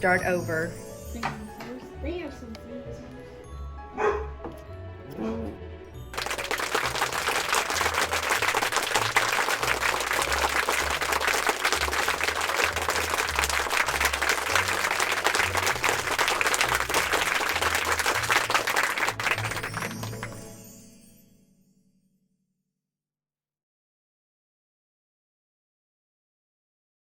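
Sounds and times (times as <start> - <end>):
crowd clapping: 6.0 - 20.6.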